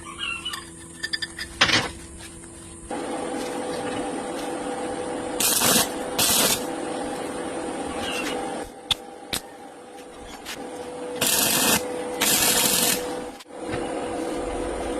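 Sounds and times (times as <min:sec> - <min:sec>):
machine running: 0:02.9 - 0:14.9
loud hissing bursts: 0:05.4 - 0:06.7, 0:11.2 - 0:13.4.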